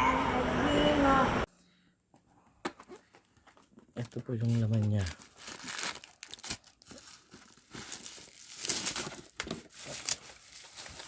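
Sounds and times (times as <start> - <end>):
packaging crinkling and rustling: 2.8 - 11.0.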